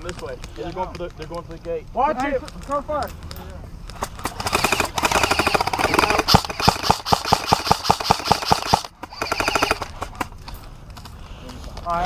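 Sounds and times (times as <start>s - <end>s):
airsoft rifles firing full auto: 4.0s - 10.3s.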